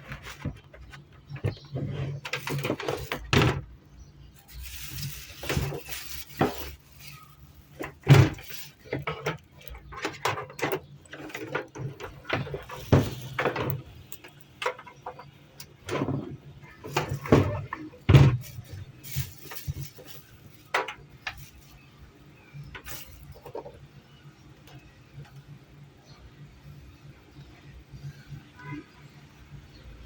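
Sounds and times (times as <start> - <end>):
hard objects knocking and clattering: 0.0 - 3.8, 4.4 - 21.8.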